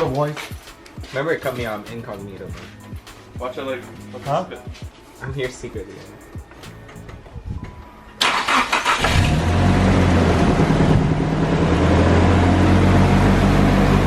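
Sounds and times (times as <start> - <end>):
car engine cranking and idling: 8.2 - 14.0.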